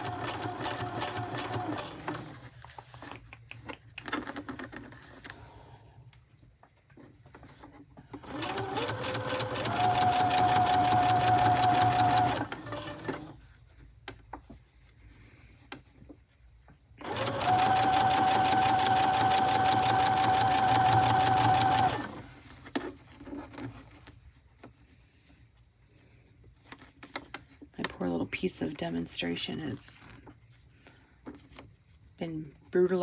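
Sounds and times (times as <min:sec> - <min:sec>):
sewing machine motor whine: 0:08.2 - 0:13.3, 0:17.0 - 0:22.3
sewing machine needle clatter: 0:08.2 - 0:13.3, 0:17.0 - 0:22.3.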